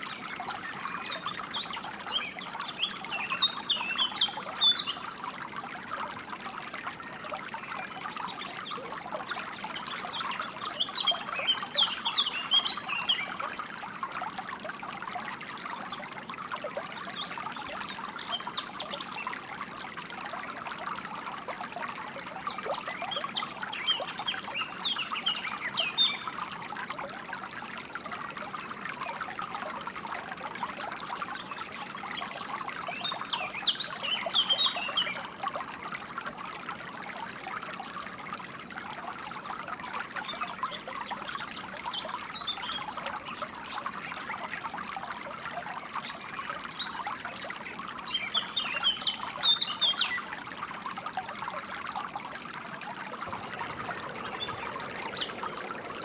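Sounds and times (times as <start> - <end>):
stream trickling and splashing: 0.0 - 56.0
songbird chirping: 53.1 - 56.0.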